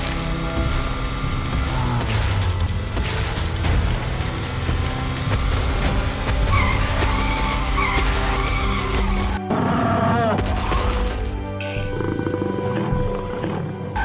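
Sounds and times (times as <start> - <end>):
cartoon car engine running: 0.0 - 9.4
tyres skidding and squealing: 0.0 - 11.3
background music: 0.0 - 14.0.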